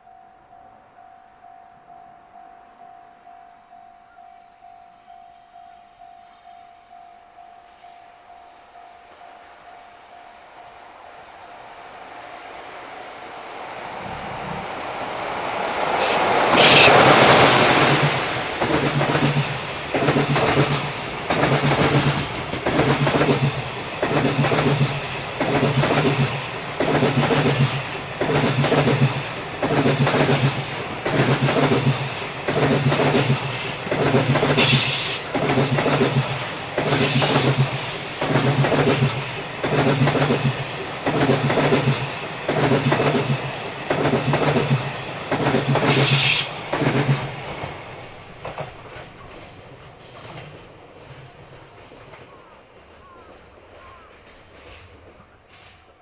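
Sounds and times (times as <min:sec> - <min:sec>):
freight train passing: 0:00.0 - 0:56.0
high wheel squeals: 0:16.0 - 0:17.0, 0:36.9 - 0:39.6, 0:45.9 - 0:46.6.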